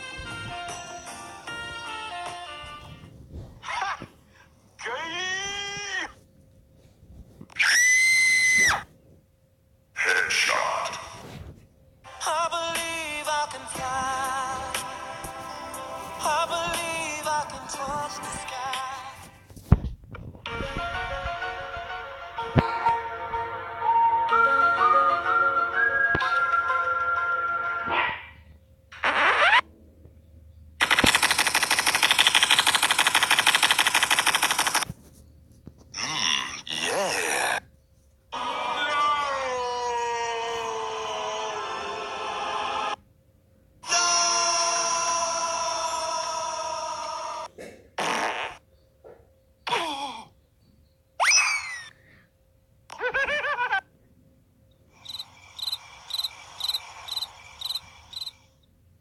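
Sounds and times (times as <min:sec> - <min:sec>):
rapid automatic gunfire: 0:30.8 - 0:34.8
cricket chirping: 0:54.9 - 0:58.6.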